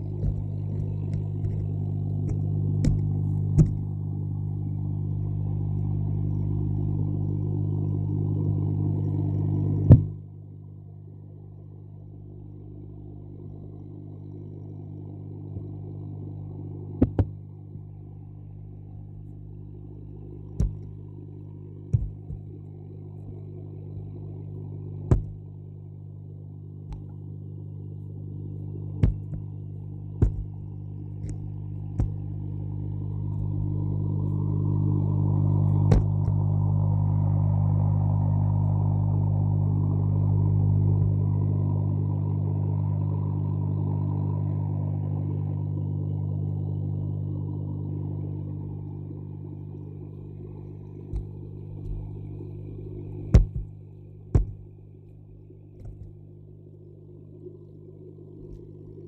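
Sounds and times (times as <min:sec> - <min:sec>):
low hum: 0:00.0 - 0:59.0
catfish popping: 0:29.0 - 0:32.3, 0:35.8 - 0:36.4.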